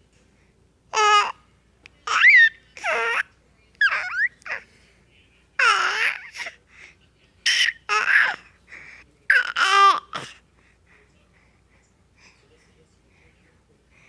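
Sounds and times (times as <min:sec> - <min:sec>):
baby squealing: 0:02.1 - 0:03.2, 0:03.8 - 0:04.6, 0:07.5 - 0:08.4.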